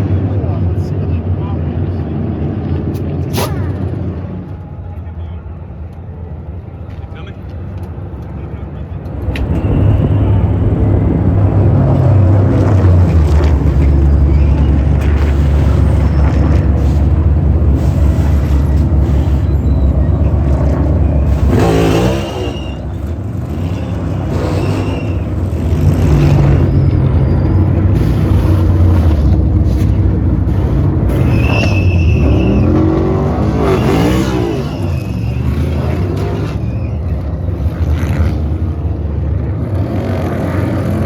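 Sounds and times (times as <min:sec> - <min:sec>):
race car engines rumbling: 0:00.0 - 0:41.0
cars sweeping past: 0:09.0 - 0:41.0.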